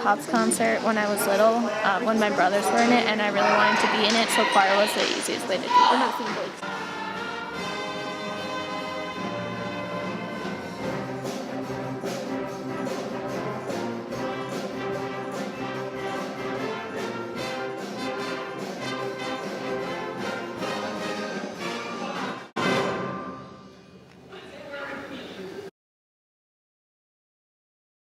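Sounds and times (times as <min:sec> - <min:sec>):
percussion strokes: 0:00.0 - 0:24.1
orchestra with brass: 0:05.6 - 0:23.7.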